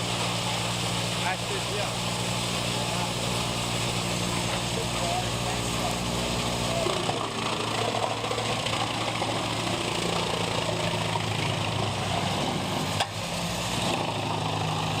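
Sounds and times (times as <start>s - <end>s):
wood chipper engine running: 0.0s - 15.0s.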